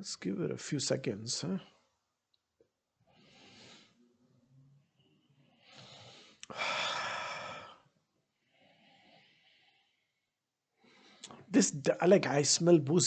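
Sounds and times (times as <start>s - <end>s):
man breathing through nose: 3.1s - 4.0s, 5.5s - 10.2s.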